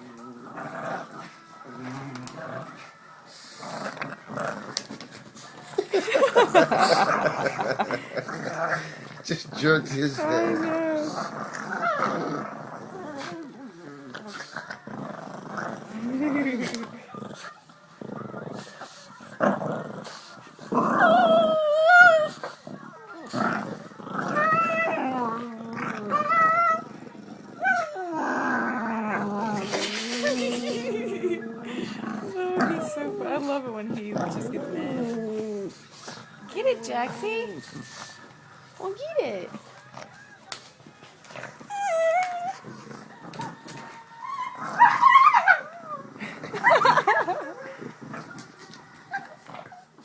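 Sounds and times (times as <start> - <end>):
dog growling: 0.0 - 40.2, 41.2 - 49.8
dog whining: 10.1 - 14.4, 24.2 - 33.6, 41.4 - 46.0.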